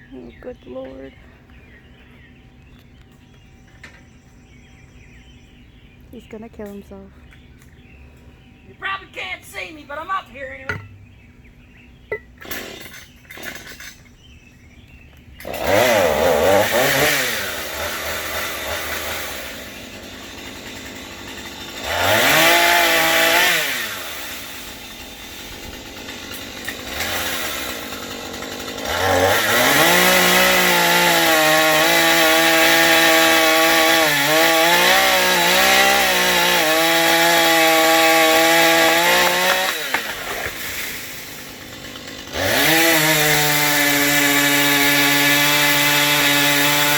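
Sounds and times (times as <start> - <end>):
chainsaw revving and cutting: 12.4 - 14.1, 15.4 - 46.9.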